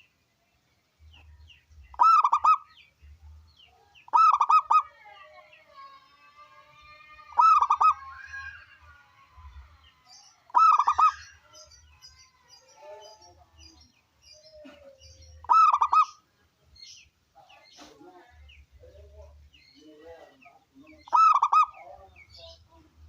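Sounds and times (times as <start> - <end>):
faint bird chirps: 0.0 - 22.9
dove cooing: 2.0 - 2.6, 4.1 - 4.9, 7.4 - 8.1, 10.5 - 11.2, 14.6 - 16.2, 21.1 - 21.8.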